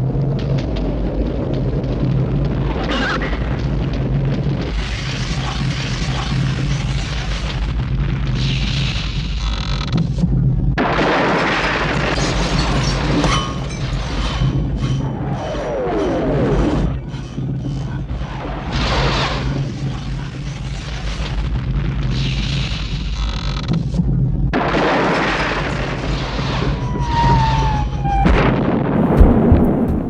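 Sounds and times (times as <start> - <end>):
low rumble: 29.0 - 30.0
sudden loud burst: 29.0 - 30.0
wash of noise: 29.0 - 30.0.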